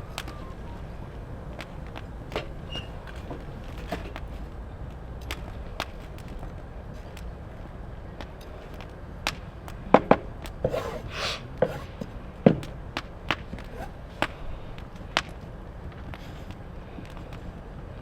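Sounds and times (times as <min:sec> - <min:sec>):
brief hissing rush: 0:10.7 - 0:11.9.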